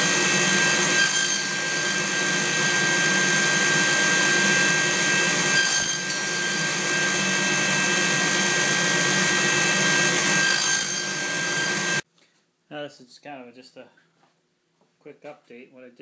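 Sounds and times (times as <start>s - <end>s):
dust collector running: 0.0s - 12.0s
saw blade cutting wood: 0.0s - 12.0s
table saw running: 0.0s - 12.0s.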